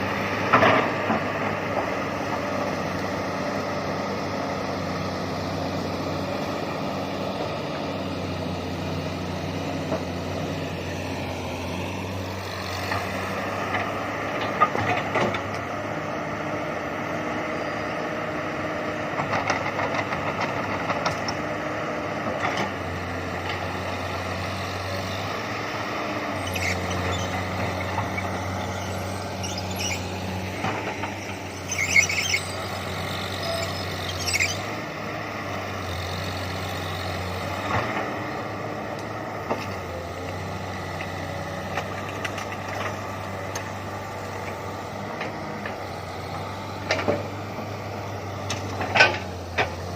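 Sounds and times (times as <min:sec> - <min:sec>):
excavator diesel engine running: 0:00.0 - 0:49.9
metallic squeals and clanks: 0:26.4 - 0:34.8.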